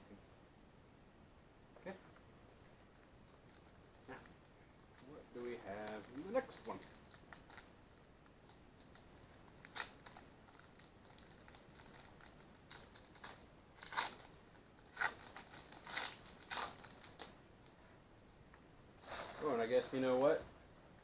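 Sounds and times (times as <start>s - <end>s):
wrapper crinkling and tearing: 2.9s - 17.4s.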